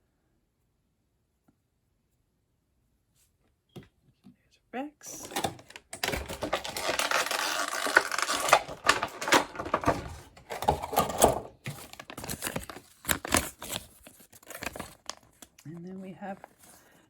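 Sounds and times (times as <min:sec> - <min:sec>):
plastic packaging crinkling and tearing: 0:05.2 - 0:15.6.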